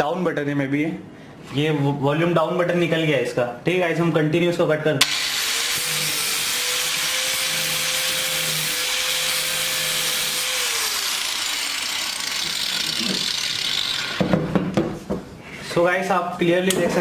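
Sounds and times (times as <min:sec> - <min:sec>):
angle grinder cutting metal: 0:05.0 - 0:14.4.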